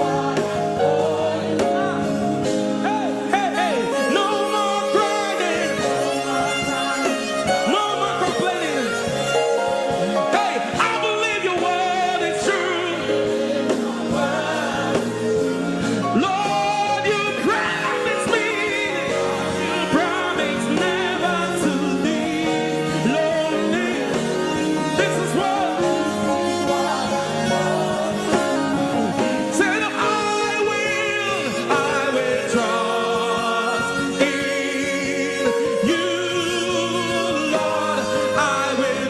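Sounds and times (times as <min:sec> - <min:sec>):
person singing gospel song: 0:00.0 - 0:39.0
sustained instrumental chords: 0:00.0 - 0:39.0.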